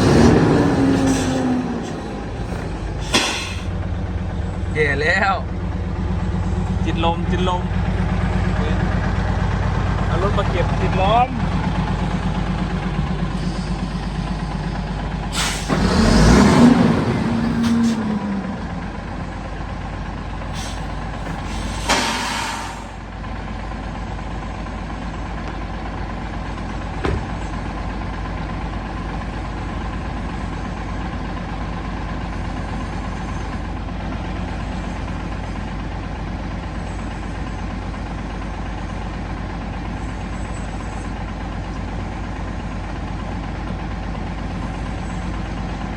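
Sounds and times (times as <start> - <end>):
diesel engine idling: 0.0 - 45.9
air brake hissing: 0.8 - 3.7, 13.3 - 14.3, 15.3 - 16.2, 17.4 - 18.2, 20.5 - 23.0.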